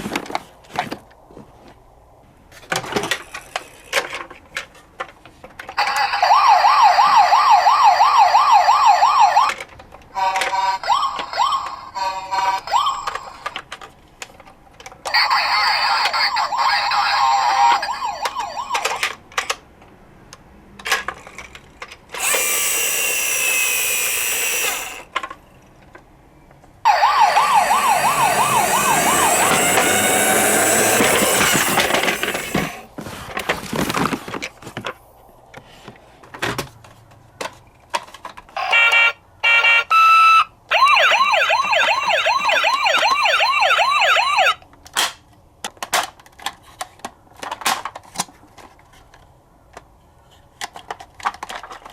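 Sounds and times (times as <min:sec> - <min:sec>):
two-tone siren call: 0:05.8 - 0:09.5, 0:26.9 - 0:32.7, 0:38.6 - 0:44.6
wavering electronic siren: 0:05.9 - 0:09.5, 0:16.0 - 0:19.0, 0:22.2 - 0:25.0, 0:26.9 - 0:32.8, 0:38.6 - 0:44.6
toy handling clicks: 0:20.8 - 0:25.4.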